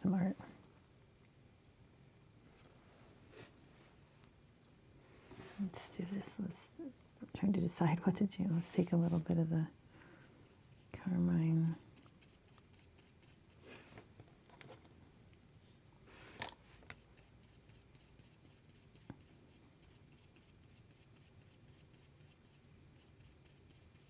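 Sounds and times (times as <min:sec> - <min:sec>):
paintbrush strokes on paper: 0:08.5 - 0:09.4, 0:10.4 - 0:14.2, 0:15.7 - 0:24.0.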